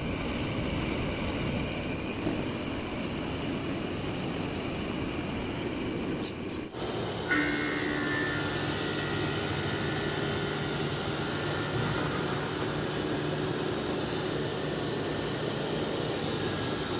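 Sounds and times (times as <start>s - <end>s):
air conditioner fan rushing: 8.0s - 16.9s.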